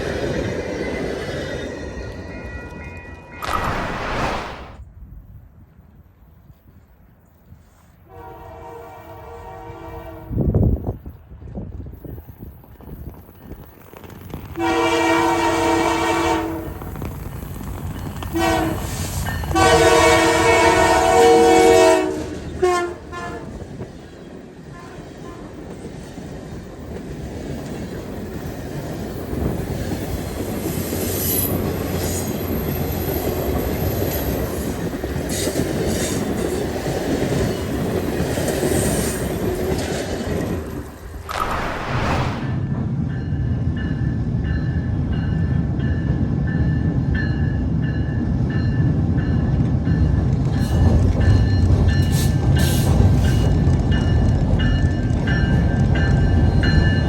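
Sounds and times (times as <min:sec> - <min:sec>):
passing train rumble: 0:08.0 - 0:57.0
locomotive horn blasts: 0:08.1 - 0:10.4, 0:14.6 - 0:16.7, 0:18.4 - 0:18.9, 0:19.5 - 0:23.5.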